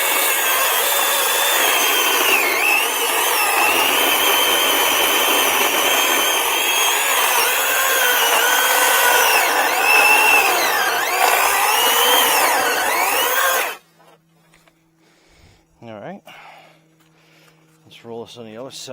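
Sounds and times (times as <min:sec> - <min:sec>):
battery chainsaw cutting log: 0:00.0 - 0:13.8.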